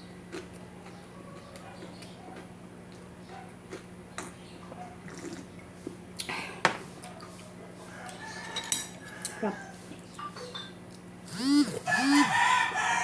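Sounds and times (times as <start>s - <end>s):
distant chicken calling: 11.3s - 13.0s.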